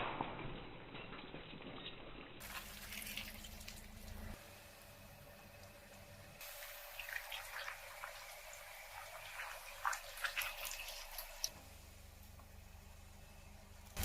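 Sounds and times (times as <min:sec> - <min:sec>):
water dripping and trickling: 0:01.3 - 0:11.6.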